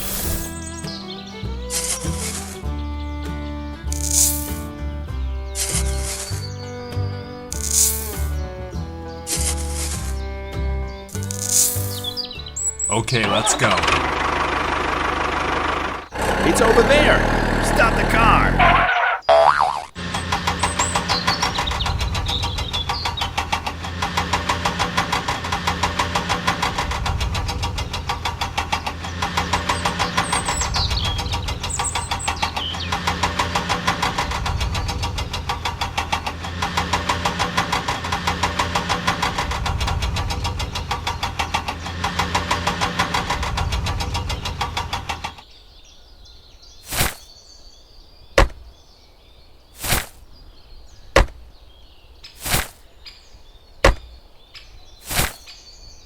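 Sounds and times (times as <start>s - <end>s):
engine chugging: 12.9s - 19.0s, 20.0s - 45.4s
sharp knocks: 48.4s - 48.7s, 51.2s - 51.4s, 53.8s - 54.2s.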